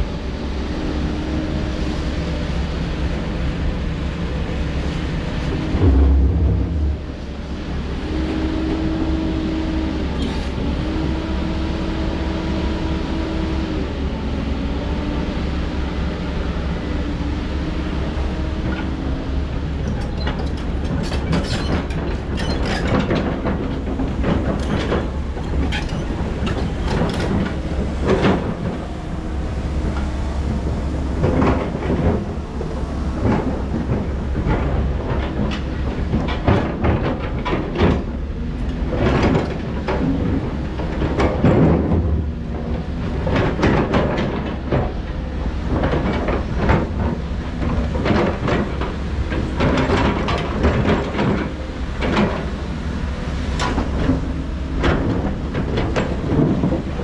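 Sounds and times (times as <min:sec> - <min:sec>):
excavator engine and hydraulic whine: 0:00.0 - 0:57.0
heavy thump: 0:05.6 - 0:07.6.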